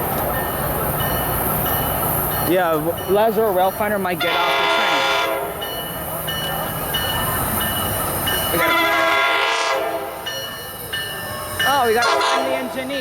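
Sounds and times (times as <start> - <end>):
train running: 0.0 - 13.0
locomotive horn blasts: 4.2 - 5.6, 8.6 - 10.3, 12.0 - 12.7.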